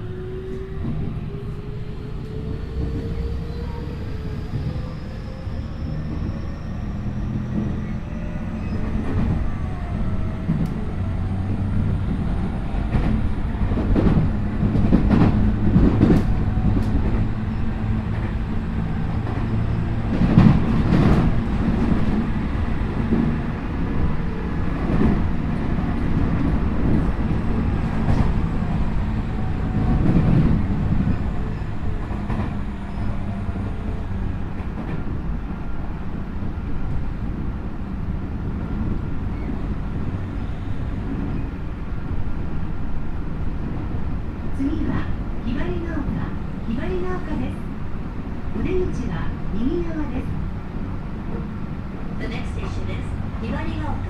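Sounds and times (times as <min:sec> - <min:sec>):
train low rumble: 0:00.0 - 0:54.0.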